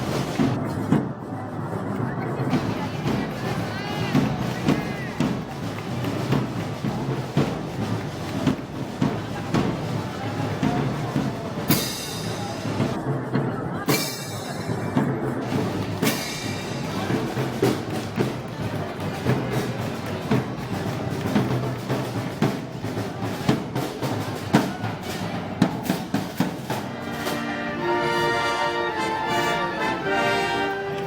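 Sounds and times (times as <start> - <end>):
festival band music: 0.0 - 0.6, 2.5 - 13.0, 15.4 - 31.0
sharp drum strikes: 15.4 - 27.9.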